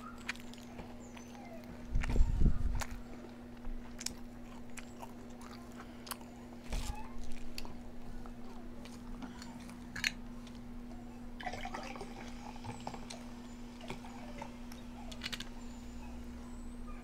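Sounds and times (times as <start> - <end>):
wet eating sounds: 0.0 - 10.6
steady low hum: 0.0 - 17.0.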